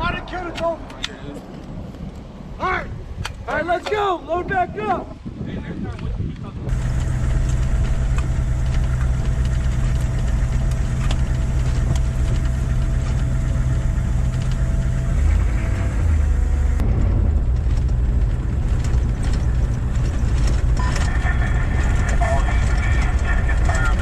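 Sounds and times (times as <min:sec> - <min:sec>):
heavy vehicle engine rumbling: 0:00.0 - 0:03.6, 0:06.6 - 0:24.0
steady engine hum: 0:06.6 - 0:24.0.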